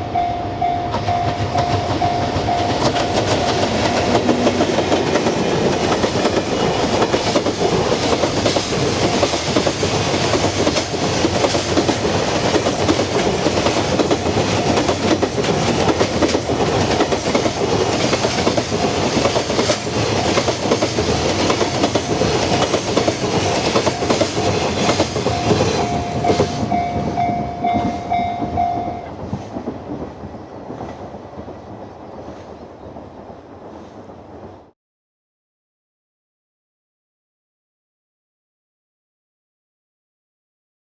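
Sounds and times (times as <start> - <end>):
steady high tone: 0.0 - 6.0, 25.2 - 29.2
freight train rolling past: 0.0 - 34.7
wagons clattering over rail joints: 1.0 - 31.1.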